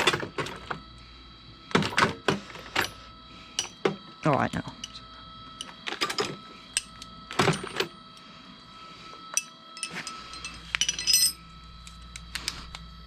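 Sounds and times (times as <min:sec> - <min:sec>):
metal sockets clinking: 0:09.4 - 0:11.4.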